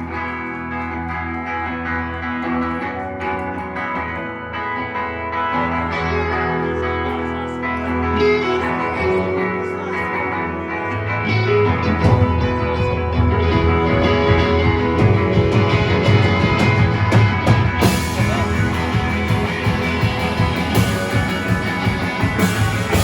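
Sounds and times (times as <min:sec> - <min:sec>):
bass guitar: 0:00.0 - 0:23.0
electric guitars ringing chords: 0:00.0 - 0:23.0
drums steady beat: 0:11.8 - 0:23.0.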